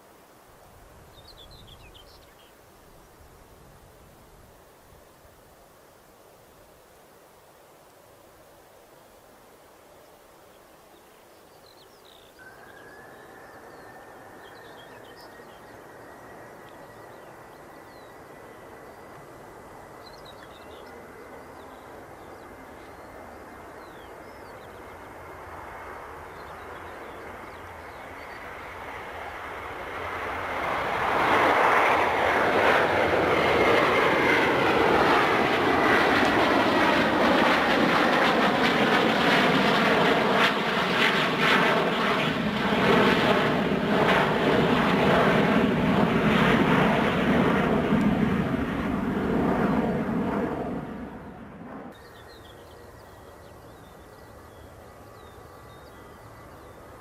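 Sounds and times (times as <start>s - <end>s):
jet airliner passing: 12.4s - 57.0s.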